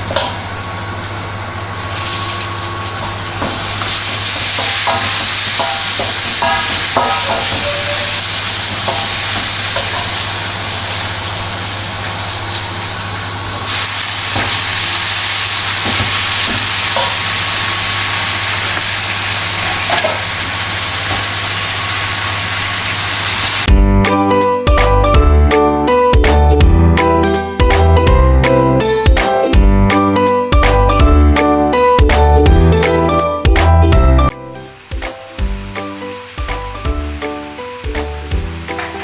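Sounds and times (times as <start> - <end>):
food sizzling in oil: 0.0 - 23.7, 34.4 - 39.0
cooking utensil scraping: 1.8 - 11.1, 13.7 - 23.7, 38.3 - 39.0.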